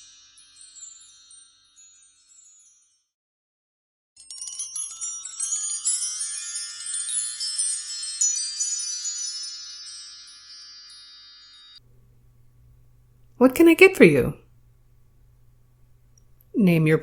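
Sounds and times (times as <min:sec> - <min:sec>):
high metallic chimes ringing: 0:00.0 - 0:03.1, 0:04.2 - 0:11.8.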